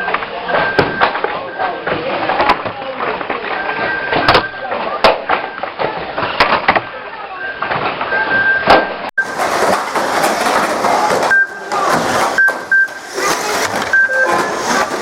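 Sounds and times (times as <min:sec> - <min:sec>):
toy cars clattering together: 0:09.2 - 0:15.0.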